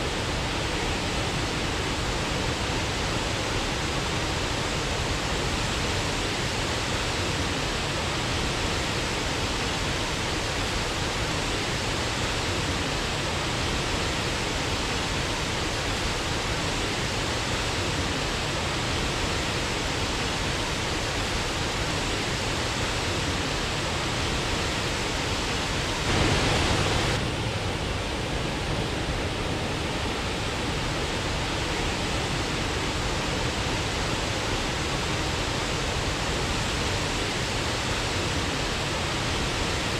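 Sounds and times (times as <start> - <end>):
waterfall rushing: 24.7 - 27.3.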